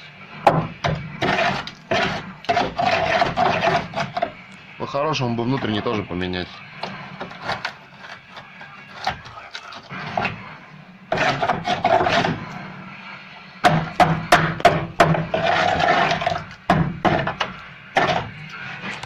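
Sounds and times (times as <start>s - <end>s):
rasping scrapes: 0.5s - 4.4s, 6.6s - 12.7s, 13.7s - 19.0s
sharp knocks: 13.6s - 15.4s, 16.2s - 18.3s.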